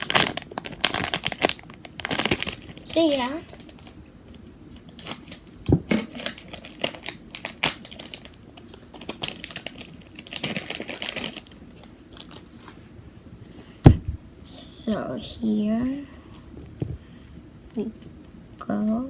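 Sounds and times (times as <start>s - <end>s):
plastic packaging crinkling: 0.0s - 4.0s, 4.7s - 12.7s.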